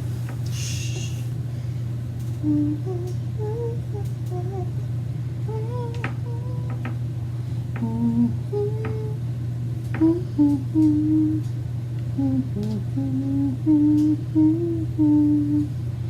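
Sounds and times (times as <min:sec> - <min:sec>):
steady low hum: 0:00.0 - 0:16.0
person humming a slow tune: 0:00.5 - 0:01.3, 0:02.4 - 0:04.8, 0:05.4 - 0:06.9, 0:07.8 - 0:09.2, 0:09.9 - 0:11.5, 0:12.1 - 0:15.8.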